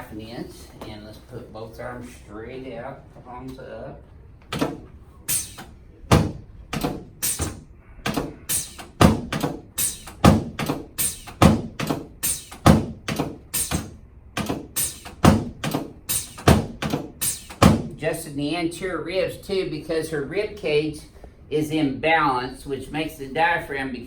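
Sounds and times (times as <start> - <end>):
sharp percussive knocks: 4.5 - 18.0.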